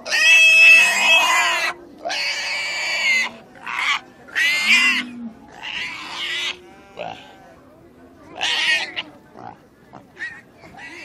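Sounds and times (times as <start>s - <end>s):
pig squealing: 0.0s - 7.4s, 10.2s - 11.0s.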